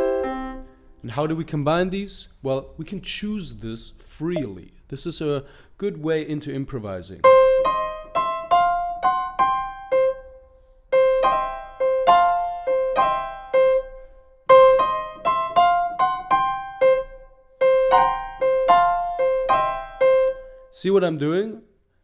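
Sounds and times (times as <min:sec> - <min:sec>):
boogie-woogie piano riff: 0:00.0 - 0:00.7, 0:07.2 - 0:10.4, 0:11.0 - 0:20.7.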